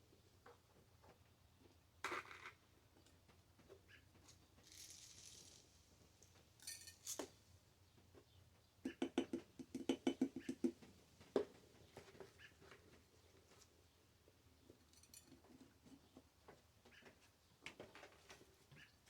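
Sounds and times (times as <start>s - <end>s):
knocks and clinks on glass jar: 8.9s - 10.8s.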